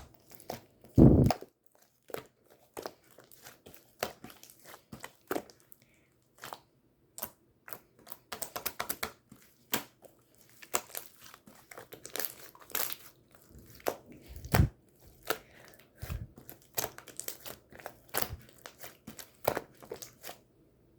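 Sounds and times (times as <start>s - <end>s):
squishy thumps: 1.0s - 1.3s, 13.5s - 15.3s, 16.0s - 16.5s.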